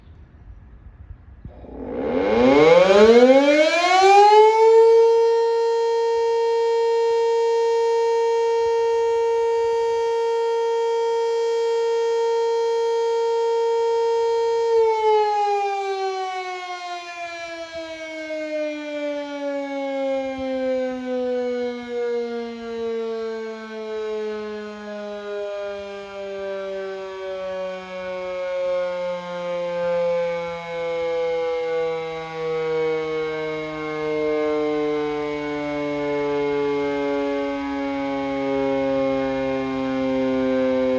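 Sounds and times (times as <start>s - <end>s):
electric siren wailing: 1.4s - 40.9s.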